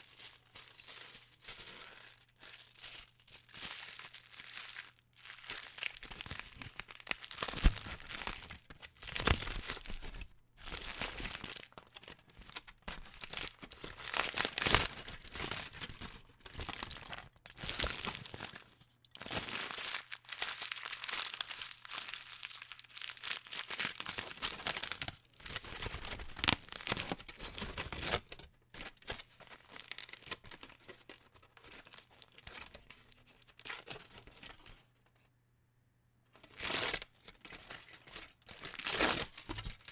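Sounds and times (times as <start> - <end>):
aluminum foil crumpling: 0.0 - 30.7.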